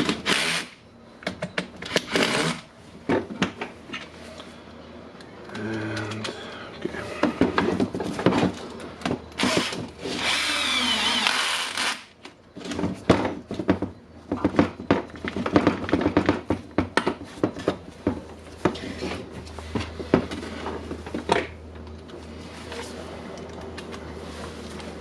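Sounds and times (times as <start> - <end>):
power drill driving screws: 9.4 - 12.1.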